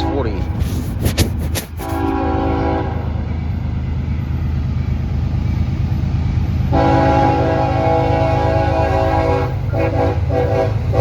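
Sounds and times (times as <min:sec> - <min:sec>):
passing train rumbling: 0:00.0 - 0:11.0
train air horn: 0:01.8 - 0:03.2, 0:06.7 - 0:11.0.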